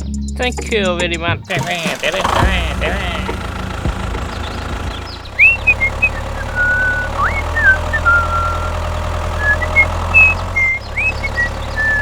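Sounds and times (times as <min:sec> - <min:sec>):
low motor hum: 0:01.5 - 0:12.0
high whistled chirps: 0:04.2 - 0:12.0.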